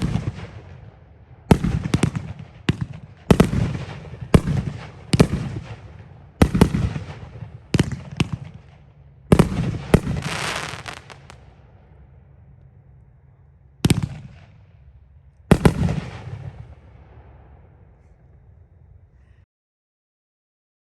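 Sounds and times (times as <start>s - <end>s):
firework crackling: 1.5s - 11.5s
firework shells exploding: 1.5s - 11.6s, 15.5s - 17.3s.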